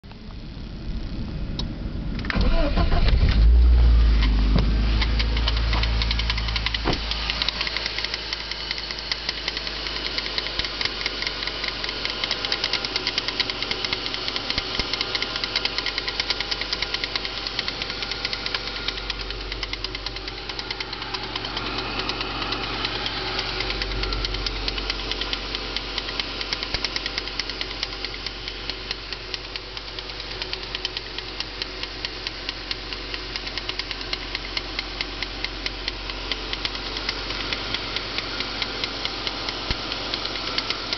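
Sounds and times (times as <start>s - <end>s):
car engine running: 0.0s - 40.9s
fast regular engine knock: 5.8s - 32.4s.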